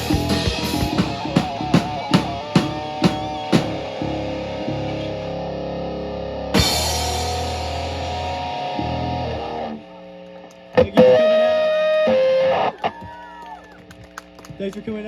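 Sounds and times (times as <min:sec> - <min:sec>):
live rock band playing: 0:00.0 - 0:05.8, 0:06.5 - 0:09.7
hard accented drum hits: 0:00.1 - 0:03.9.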